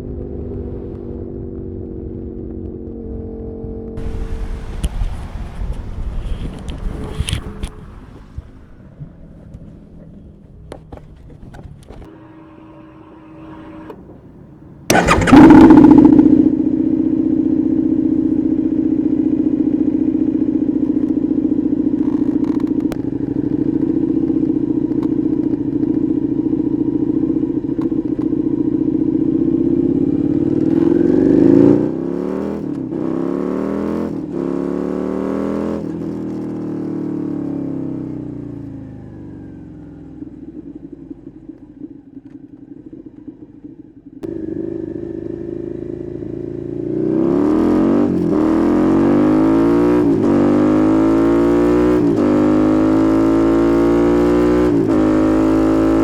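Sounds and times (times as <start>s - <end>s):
engine throttle blips: 4.0s - 21.2s
motorcycle engine idling: 4.0s - 31.6s, 37.5s - 47.0s.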